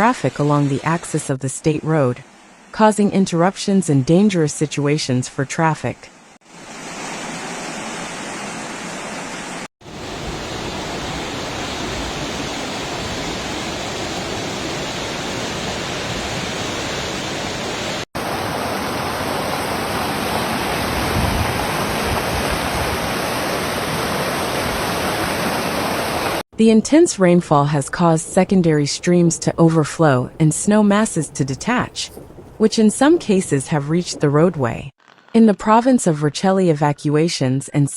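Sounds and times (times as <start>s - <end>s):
floodwater rushing: 6.6s - 26.4s.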